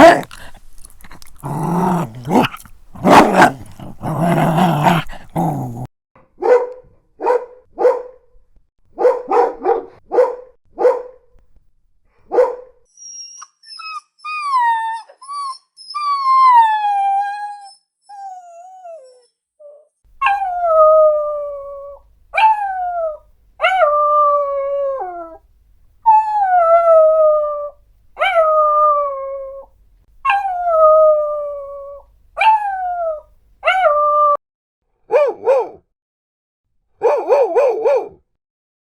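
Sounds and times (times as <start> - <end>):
dog howling: 0.0 - 0.5, 1.3 - 5.9
dog whining: 0.0 - 5.9, 13.0 - 21.8
dogs barking: 0.0 - 8.1, 9.0 - 11.1, 12.3 - 12.7, 35.1 - 35.8, 37.0 - 38.2.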